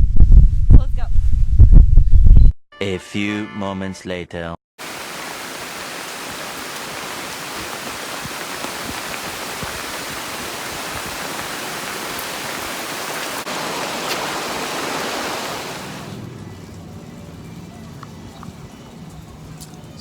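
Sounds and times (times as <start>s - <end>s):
rushing water: 4.8s - 20.0s.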